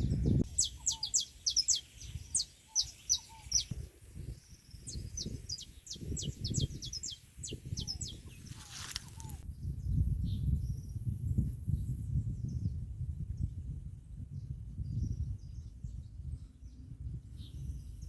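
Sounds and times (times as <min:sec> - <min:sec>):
birds chirping: 0:00.0 - 0:09.4.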